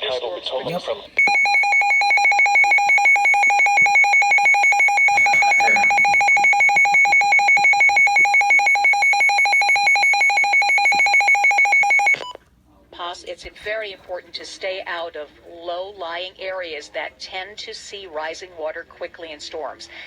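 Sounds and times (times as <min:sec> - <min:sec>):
two-tone alert alarm: 0:01.2 - 0:12.2.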